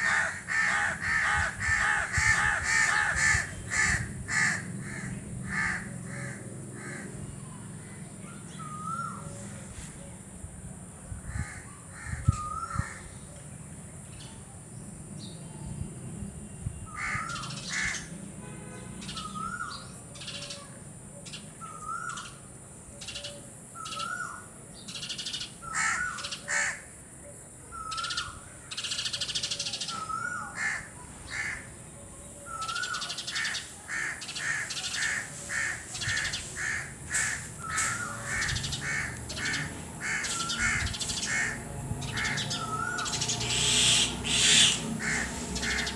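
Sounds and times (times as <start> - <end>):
short bird-like calls: 32.6 - 45.9.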